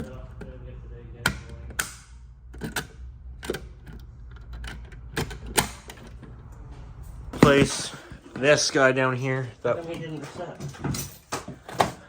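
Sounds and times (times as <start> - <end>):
sharp clicks and knocks: 1.2 - 6.4.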